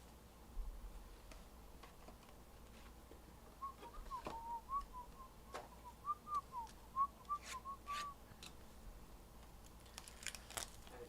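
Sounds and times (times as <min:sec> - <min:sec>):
person whistling a tune: 0:03.6 - 0:08.2.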